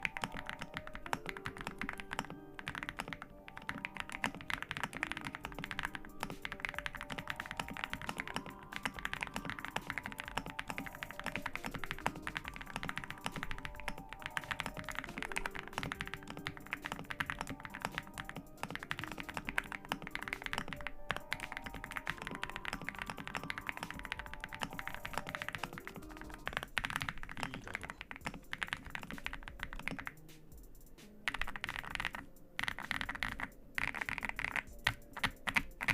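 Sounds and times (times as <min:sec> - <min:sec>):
background music with melody: 0:00.0 - 0:35.9
rapid mechanical keyboard typing: 0:00.0 - 0:35.9.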